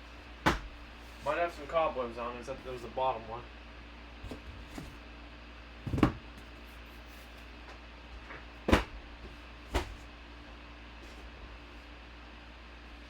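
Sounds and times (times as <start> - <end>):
box knocking and thumping: 5.8 - 6.4, 8.7 - 9.0.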